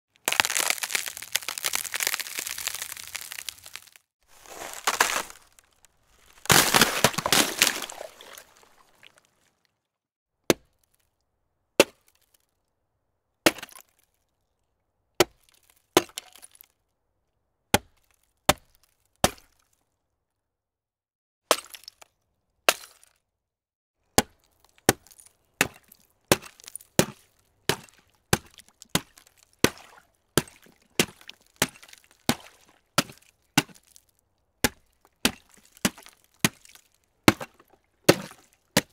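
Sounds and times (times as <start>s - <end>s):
ice crackling and breaking: 0.2s - 9.5s, 34.8s - 38.9s
sharp hits on ice: 0.3s - 5.6s, 6.2s - 9.2s, 24.9s - 34.0s, 34.7s - 38.9s.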